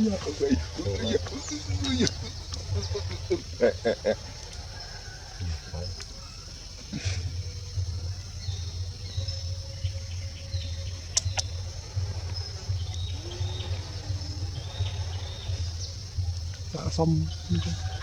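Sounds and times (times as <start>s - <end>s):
bird chirps: 0.0s - 18.0s
high-pitched insect drone: 0.0s - 18.0s
sharp clicks: 11.1s - 11.6s.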